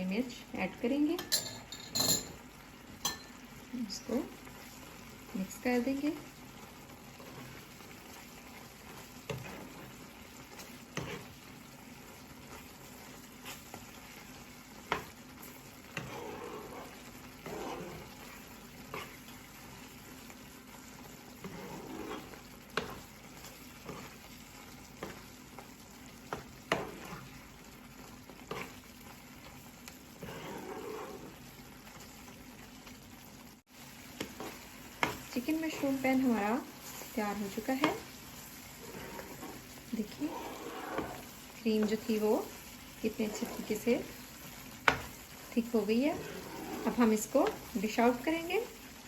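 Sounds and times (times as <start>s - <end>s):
food sizzling in a pan: 0.0s - 49.0s
utensil scraping through sauce: 7.0s - 8.2s, 8.8s - 11.4s, 15.4s - 19.3s, 21.0s - 24.2s, 30.1s - 31.6s, 34.2s - 41.4s, 43.1s - 44.2s, 45.8s - 47.8s.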